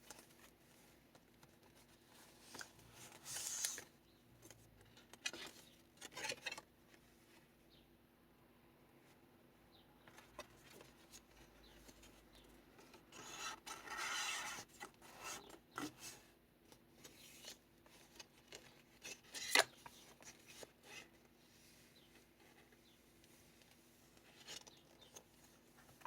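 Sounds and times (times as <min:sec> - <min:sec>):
paper pages rustling: 0:01.2 - 0:06.6.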